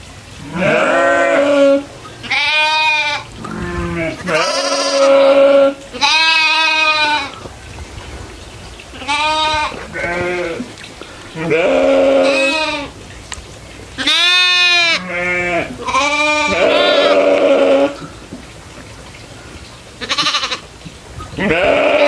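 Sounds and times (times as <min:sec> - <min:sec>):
goats bleating: 0:00.4 - 0:07.5, 0:08.9 - 0:13.0, 0:14.0 - 0:18.1, 0:20.0 - 0:20.7, 0:21.4 - 0:22.0.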